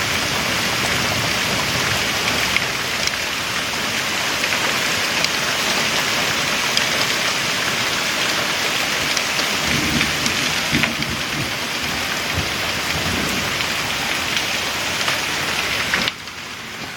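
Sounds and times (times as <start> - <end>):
heavy rain falling: 0.0 - 16.9
low rumble of thunder: 9.6 - 14.6.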